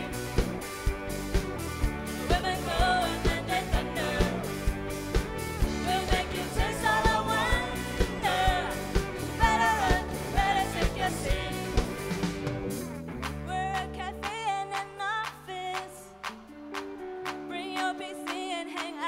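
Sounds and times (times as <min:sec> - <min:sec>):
steady drum beat: 0:00.0 - 0:13.4
person singing pop melody: 0:02.2 - 0:04.7, 0:05.6 - 0:12.3, 0:13.4 - 0:16.3, 0:17.4 - 0:19.0.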